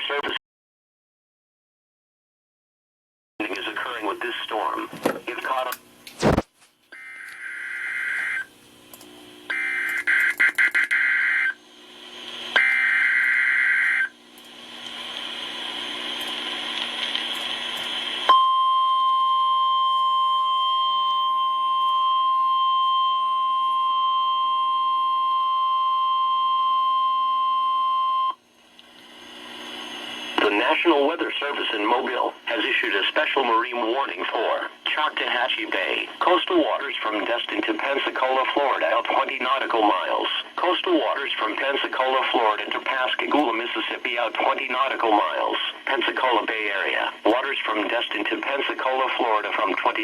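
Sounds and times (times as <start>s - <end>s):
steady alarm tone: 7.0s - 8.5s, 9.5s - 11.7s, 12.5s - 14.2s.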